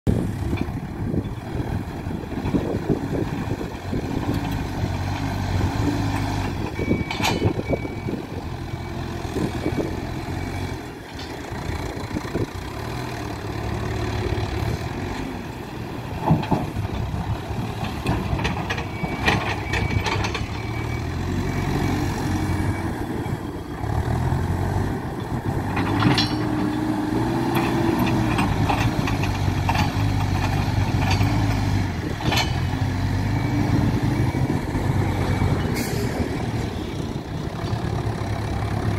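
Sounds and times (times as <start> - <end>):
diesel engine running: 0.1 - 38.9
sharp metal clanks: 25.9 - 26.6.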